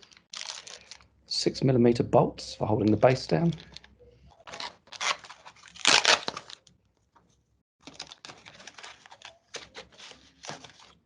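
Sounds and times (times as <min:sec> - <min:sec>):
packaging crackling and rustling: 0:07.8 - 0:11.0.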